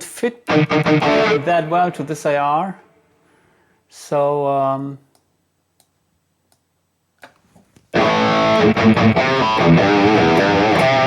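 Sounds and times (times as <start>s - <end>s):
distorted electric guitar: 0.4s - 2.2s, 8.0s - 11.0s.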